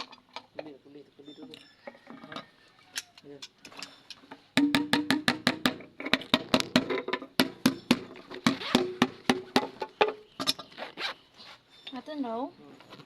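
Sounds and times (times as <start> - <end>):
sharp knocks with ringing tone: 4.6 - 10.6.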